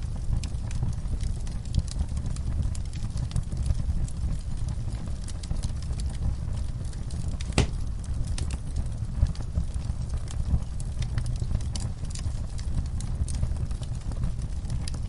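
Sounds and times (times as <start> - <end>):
wood fire crackling: 0.0 - 15.0
loud fire pop: 7.5 - 7.9.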